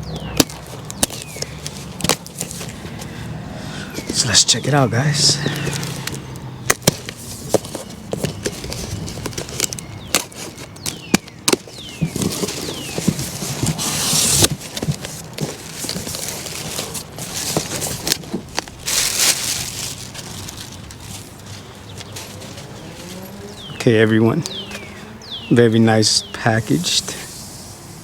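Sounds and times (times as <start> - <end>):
cardboard tearing: 0.4 - 3.2, 5.4 - 23.4
packing material crinkling: 0.4 - 4.6, 5.3 - 23.6.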